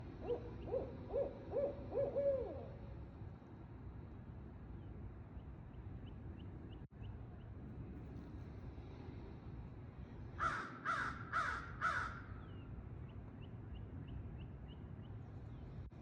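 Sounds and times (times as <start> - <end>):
owl hooting: 0.1 - 2.8.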